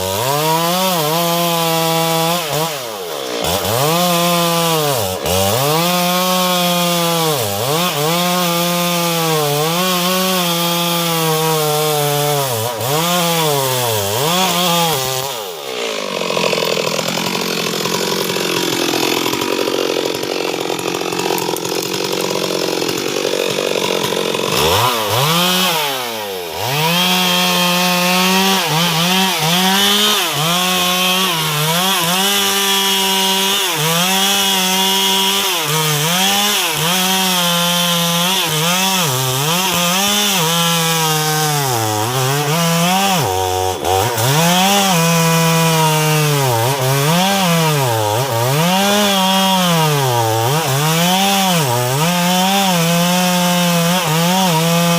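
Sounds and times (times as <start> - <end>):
chainsaw cutting wood: 0.0 - 54.9.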